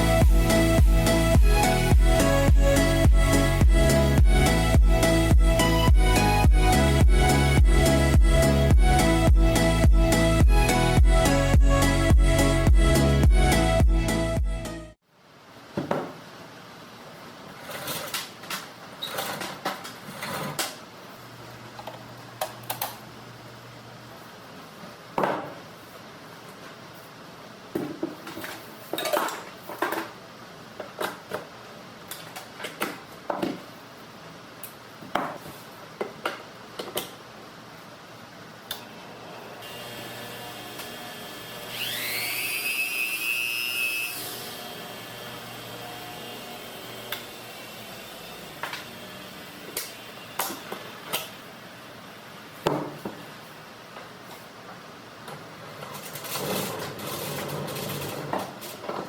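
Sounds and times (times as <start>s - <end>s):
whirring rising in pitch: 0.0s - 15.0s, 41.7s - 44.4s.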